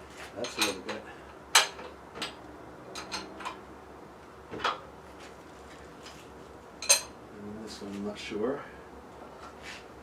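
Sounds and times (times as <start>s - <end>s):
hand tools tapping metal bolts: 0.4s - 1.0s.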